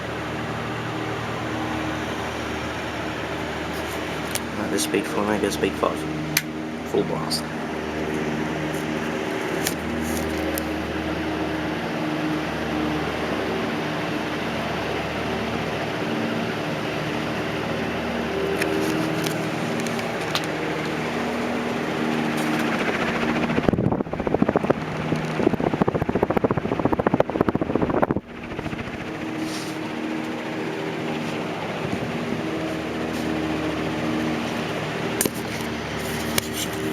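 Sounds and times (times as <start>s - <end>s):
ceiling fan air rush: 0.0s - 36.9s
loud rapid fluttering: 0.0s - 36.9s
low motor hum: 0.0s - 36.9s.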